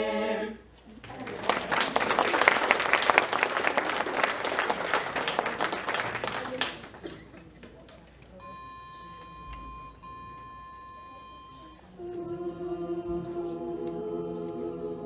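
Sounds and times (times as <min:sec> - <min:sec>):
audience applauding: 0:01.0 - 0:08.2.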